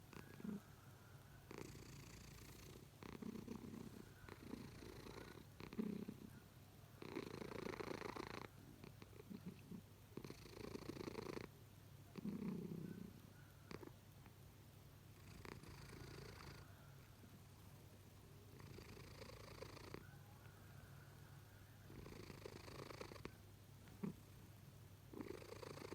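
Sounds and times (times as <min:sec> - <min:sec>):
cat snoring: 0:00.1 - 0:00.7, 0:01.5 - 0:06.3, 0:07.0 - 0:11.5, 0:12.1 - 0:13.9, 0:15.2 - 0:16.7, 0:18.5 - 0:20.2, 0:21.9 - 0:23.4, 0:25.1 - 0:25.9.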